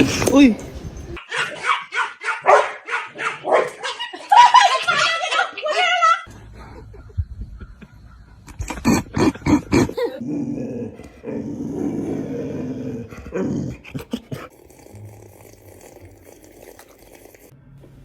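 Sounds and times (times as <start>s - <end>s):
dog growling: 8.8s - 15.8s.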